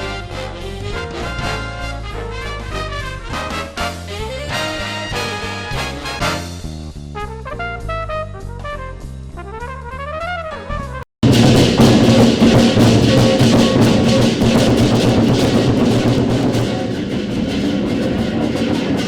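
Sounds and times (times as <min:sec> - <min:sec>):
drum-heavy percussion music: 0:00.0 - 0:06.8, 0:11.2 - 0:19.0
brass music: 0:00.0 - 0:19.0.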